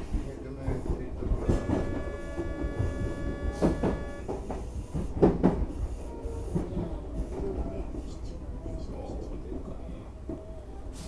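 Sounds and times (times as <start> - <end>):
electric train rumble: 0.8 - 4.6
train motor whine: 1.2 - 4.6.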